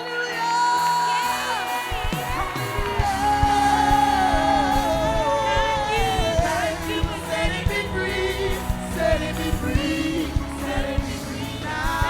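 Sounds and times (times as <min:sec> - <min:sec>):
bass and drum beat: 0:01.7 - 0:12.0
sustained chords: 0:02.7 - 0:12.0
person singing long notes: 0:03.0 - 0:12.0.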